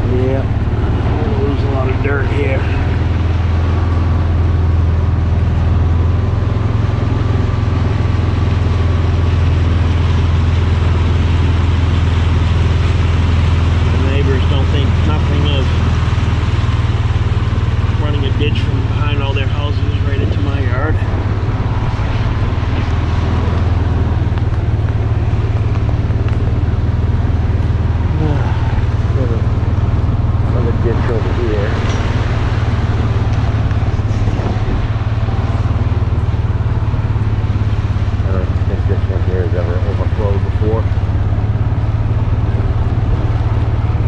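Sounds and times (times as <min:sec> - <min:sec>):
small engine droning: 0:00.0 - 0:44.0.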